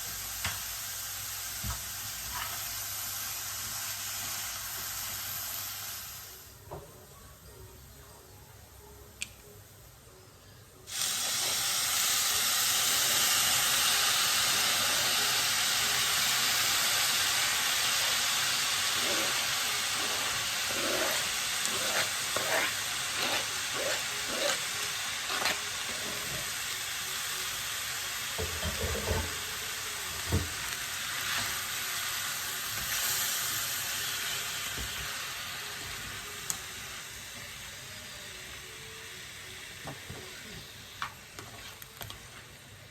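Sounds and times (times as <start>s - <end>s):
food sizzling in hot oil: 0.0s - 6.5s, 10.9s - 42.9s
spoon stirring and knocking pan: 20.0s - 24.6s.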